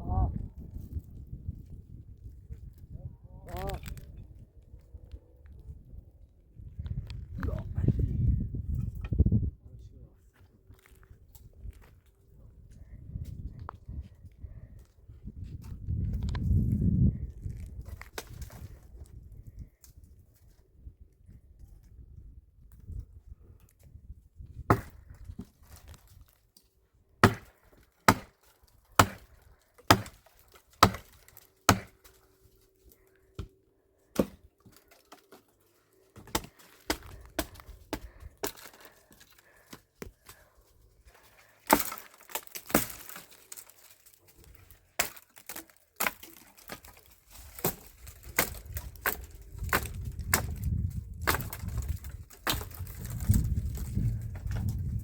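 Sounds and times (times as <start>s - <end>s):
firewood being chopped: 17.7s - 18.7s, 24.6s - 26.3s, 27.2s - 32.3s, 34.1s - 40.4s, 41.1s - 55.0s.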